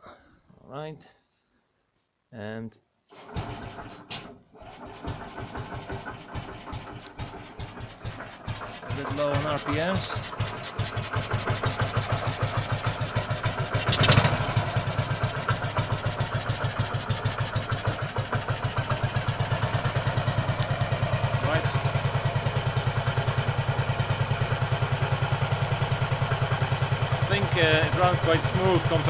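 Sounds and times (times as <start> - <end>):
scooter engine idling: 4.6 - 29.0.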